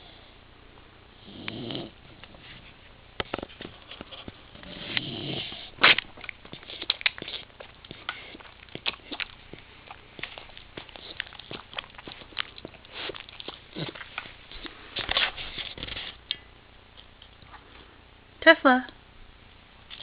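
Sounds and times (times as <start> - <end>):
dog snoring: 1.2 - 2.0, 4.5 - 5.9.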